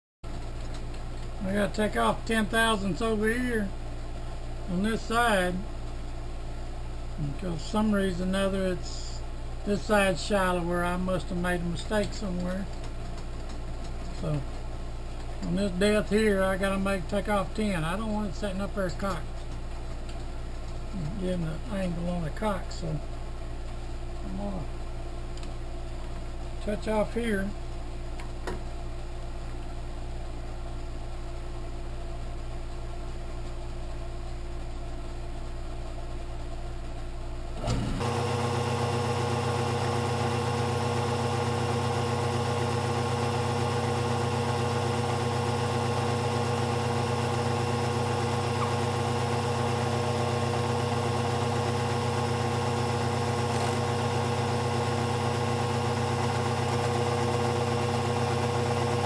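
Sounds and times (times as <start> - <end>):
electric motor humming: 38.0 - 59.0.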